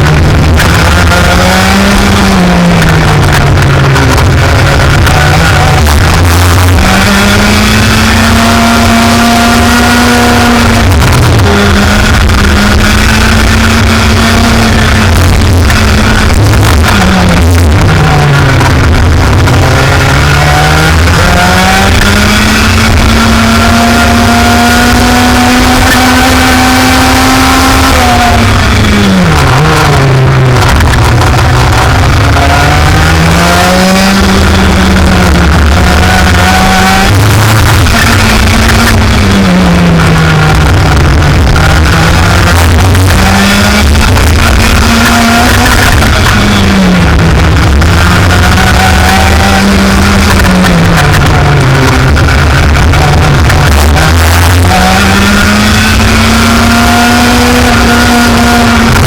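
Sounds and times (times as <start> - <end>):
race engine revving: 0.0 - 59.0.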